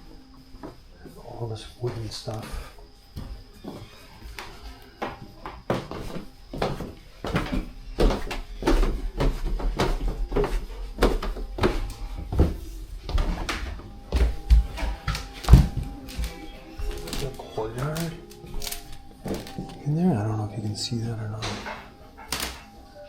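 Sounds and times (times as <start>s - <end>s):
footsteps on wooden floorboards: 0.4s - 22.9s.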